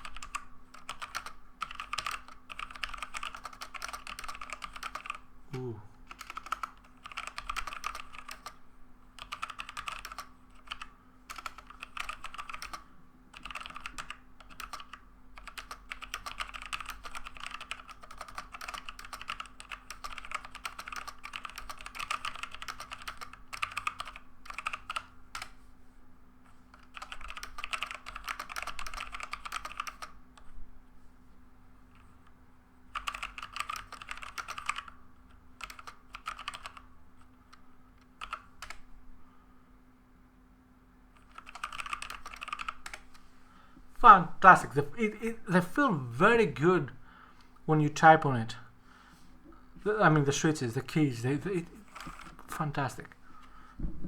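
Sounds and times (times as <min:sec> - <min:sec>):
mechanical keyboard typing: 0:00.0 - 0:05.3, 0:06.1 - 0:08.6, 0:09.2 - 0:25.6, 0:26.7 - 0:30.5, 0:32.9 - 0:35.0, 0:35.6 - 0:36.9, 0:37.5 - 0:38.9, 0:41.2 - 0:43.1, 0:51.6 - 0:52.9.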